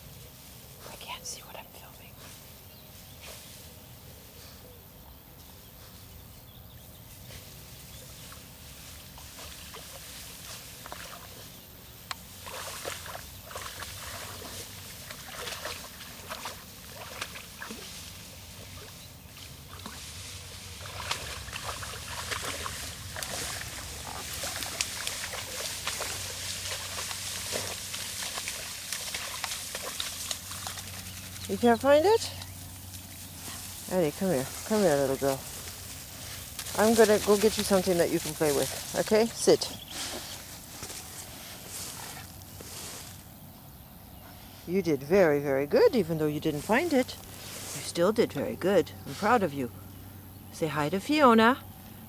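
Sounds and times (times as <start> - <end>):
water sloshing and splashing: 12.2 - 39.6.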